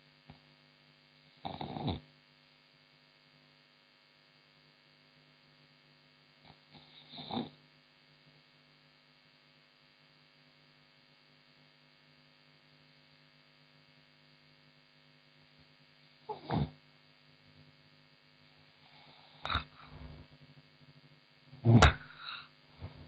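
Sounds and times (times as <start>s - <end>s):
faint electrical hum: 0.0s - 23.0s
woman snoring: 1.4s - 2.0s, 6.5s - 7.6s, 16.3s - 16.8s, 18.8s - 20.2s, 21.6s - 23.0s.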